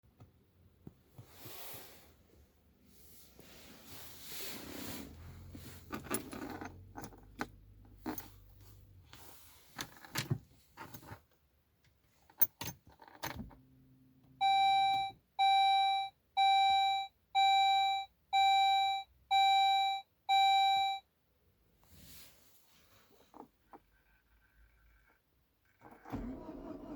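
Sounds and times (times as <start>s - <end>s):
keys rattling in ignition: 5.8s - 8.4s
electronic warning beeps: 14.4s - 21.0s.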